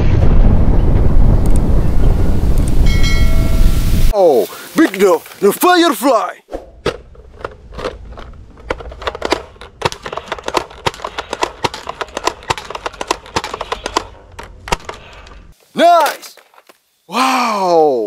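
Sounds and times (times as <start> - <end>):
plastic toy blasters clicking: 7.4 - 15.0.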